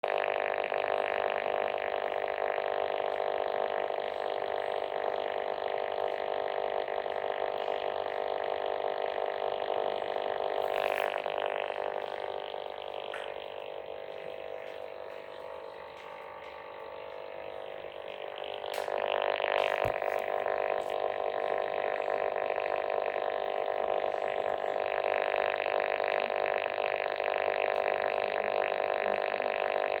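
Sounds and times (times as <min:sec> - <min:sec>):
radio speaker buzzing signal: 0:00.0 - 0:30.0.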